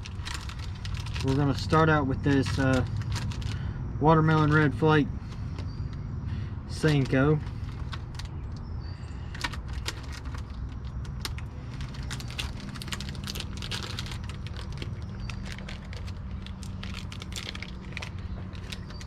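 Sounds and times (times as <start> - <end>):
plastic bag crinkling: 0.0 - 3.6, 6.8 - 8.3, 9.3 - 19.0
low steady rumble: 0.0 - 19.0.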